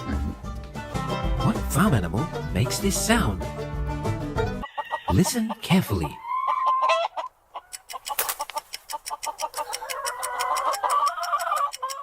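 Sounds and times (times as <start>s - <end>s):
chickens clucking: 4.4s - 12.0s.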